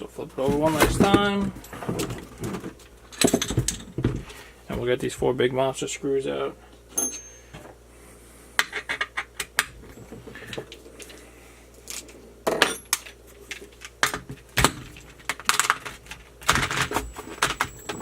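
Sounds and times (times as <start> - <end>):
tools clinking on metal chassis: 0.5 - 3.9, 7.0 - 7.6, 16.5 - 18.0.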